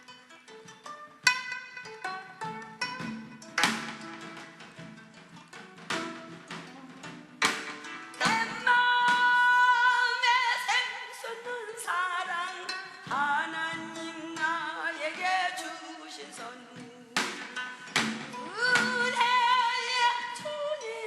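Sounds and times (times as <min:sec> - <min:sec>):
instrumental accompaniment: 0:00.0 - 0:10.0, 0:11.9 - 0:21.0.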